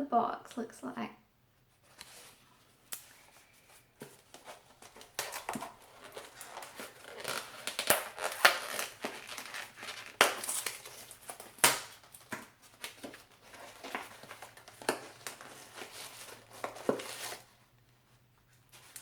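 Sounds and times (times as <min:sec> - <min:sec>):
packaging crinkling: 0:04.7 - 0:17.5.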